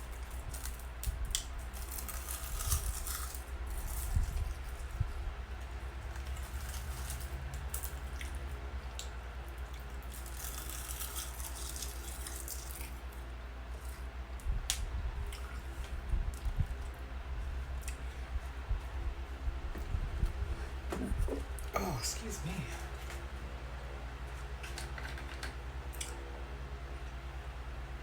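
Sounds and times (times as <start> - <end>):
crunchy chewing: 0.0 - 14.5, 15.2 - 18.9
wet mouth sounds: 21.0 - 22.8.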